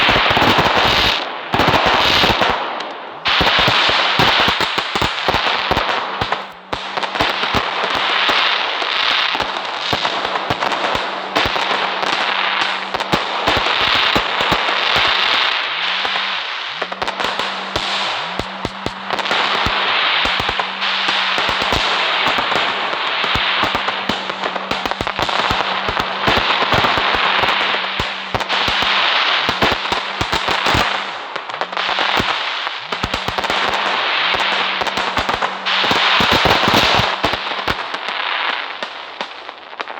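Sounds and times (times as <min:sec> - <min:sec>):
firecrackers crackling: 0:00.0 - 0:39.9.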